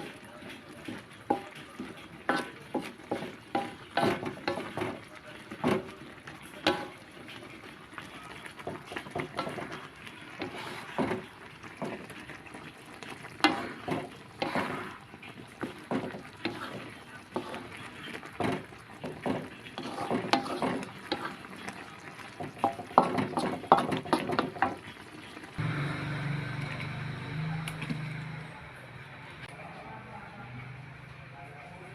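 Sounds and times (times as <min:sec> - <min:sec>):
spatula scraping a wok: 0:00.0 - 0:07.8, 0:08.4 - 0:25.4
food cooking in sauce: 0:00.0 - 0:28.4.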